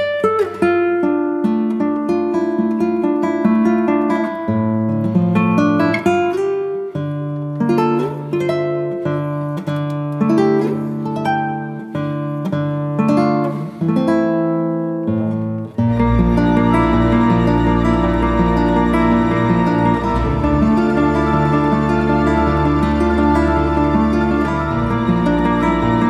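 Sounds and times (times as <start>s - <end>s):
plucked acoustic guitar melody: 0.0s - 26.0s
new-age music with low drone: 16.0s - 26.0s.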